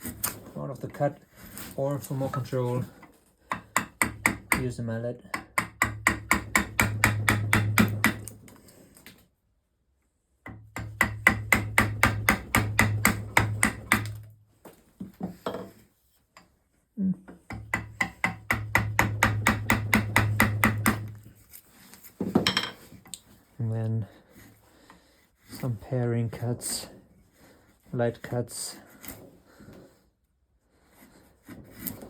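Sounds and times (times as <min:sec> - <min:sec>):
mallet tapping a chisel: 0:03.5 - 0:08.3, 0:10.5 - 0:14.2, 0:17.5 - 0:21.2.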